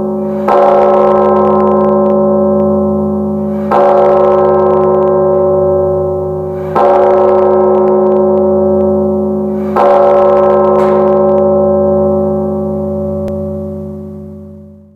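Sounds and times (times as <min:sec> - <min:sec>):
bell tolling: 0:00.0 - 0:14.9.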